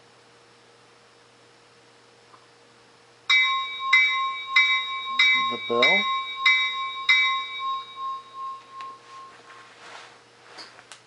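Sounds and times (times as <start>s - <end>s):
simulated locomotive bell: 3.3s - 9.7s.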